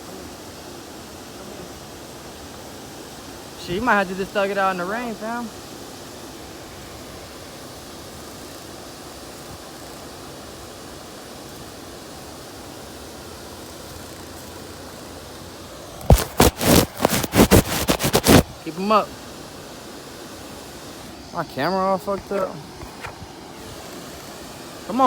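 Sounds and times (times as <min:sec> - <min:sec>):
phone being handled: 0:16.0 - 0:18.4.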